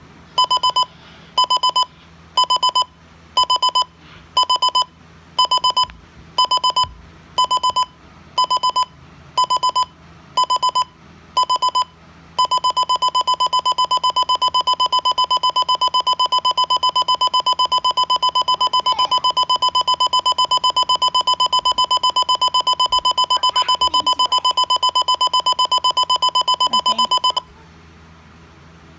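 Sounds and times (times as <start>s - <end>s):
alarm clock pulsing beep: 0.4s - 27.5s.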